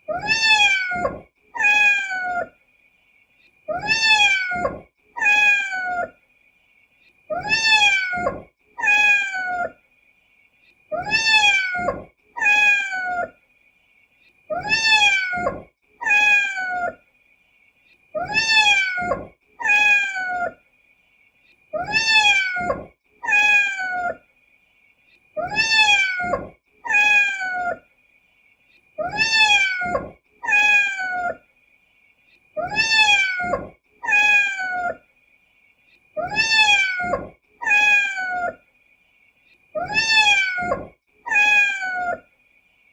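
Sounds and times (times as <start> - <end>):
kitten meowing: 0.1 - 2.5, 3.7 - 6.1, 7.3 - 9.7, 10.9 - 13.3, 14.5 - 17.0, 18.2 - 20.6, 21.8 - 24.2, 25.4 - 27.8, 29.0 - 31.4, 32.6 - 35.0, 36.2 - 38.6, 39.8 - 42.2.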